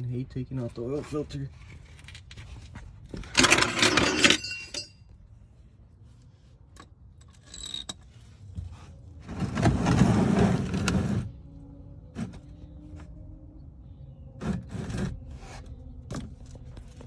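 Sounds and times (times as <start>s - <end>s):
metal scraping and rattling: 1.1s - 5.0s, 9.2s - 11.3s
metal tools clinking: 3.2s - 5.2s.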